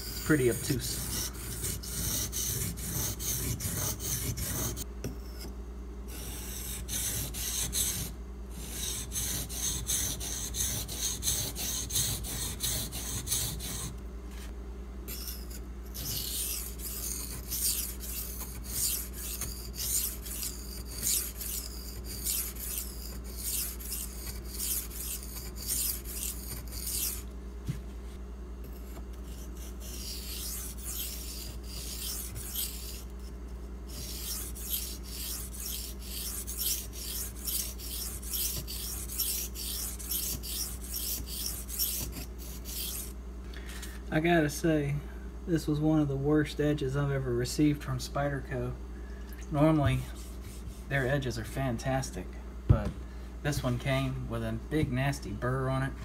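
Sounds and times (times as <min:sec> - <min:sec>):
knife rasping on whetstone: 0:00.0 - 0:05.5, 0:06.1 - 0:14.0, 0:15.1 - 0:27.3, 0:28.6 - 0:33.3, 0:33.9 - 0:43.2, 0:50.1 - 0:50.9.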